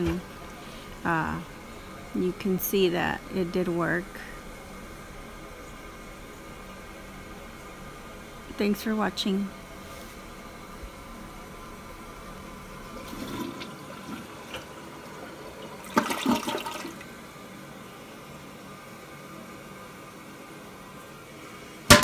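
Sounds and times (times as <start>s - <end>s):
toilet flushing: 0.0s - 8.7s, 9.8s - 20.7s
toilet clatter: 12.9s - 17.0s.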